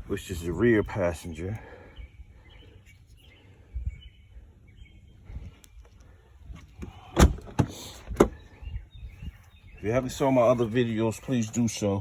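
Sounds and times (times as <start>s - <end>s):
faint bird chirps: 1.2s - 7.1s, 8.3s - 10.9s.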